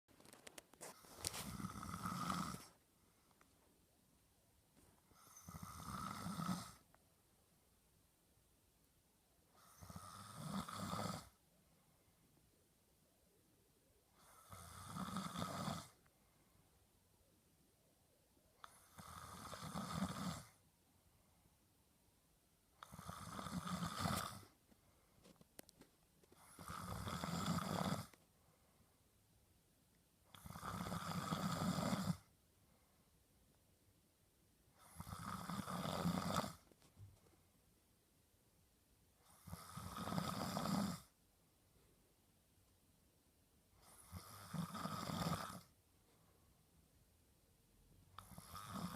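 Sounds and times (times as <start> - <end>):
quiet breathing: 0.2 - 4.0, 4.7 - 7.9, 9.4 - 12.7, 13.3 - 17.1, 18.4 - 21.9, 22.7 - 29.4, 30.2 - 33.6, 34.6 - 37.8, 43.7 - 46.9
man snoring: 1.4 - 2.7, 5.2 - 6.8, 9.6 - 11.4, 14.2 - 16.0, 18.7 - 20.6, 22.8 - 24.5, 26.4 - 28.2, 30.4 - 32.3, 34.8 - 36.6, 39.4 - 41.1, 43.8 - 45.7, 48.2 - 48.9.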